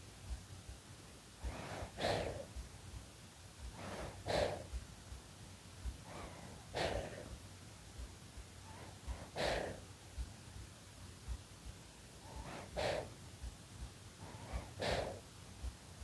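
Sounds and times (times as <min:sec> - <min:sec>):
baby breathing in sleep: 0:01.4 - 0:02.5, 0:03.8 - 0:04.8, 0:06.0 - 0:07.4, 0:08.7 - 0:09.9, 0:12.2 - 0:13.2, 0:14.2 - 0:15.3.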